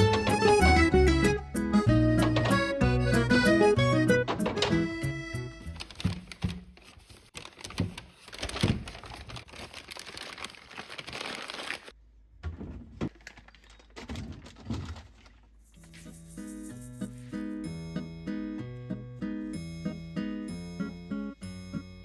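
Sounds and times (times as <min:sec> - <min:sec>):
plastic packaging crinkling: 0:05.6 - 0:12.0, 0:13.1 - 0:16.9.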